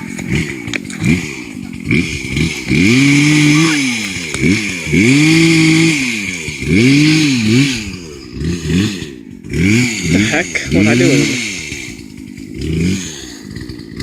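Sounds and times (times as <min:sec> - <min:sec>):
chainsaw engine revving: 0:00.0 - 0:14.0.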